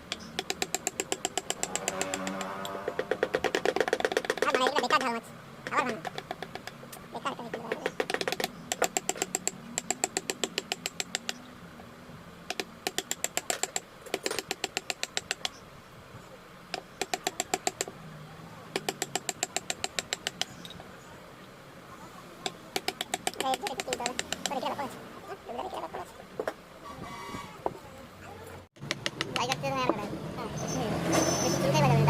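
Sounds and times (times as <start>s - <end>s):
hammer tapping chisel into wood: 0.1s - 6.8s, 7.5s - 11.4s, 12.5s - 15.6s, 16.7s - 17.9s, 18.8s - 20.6s, 22.4s - 24.6s, 28.8s - 29.6s.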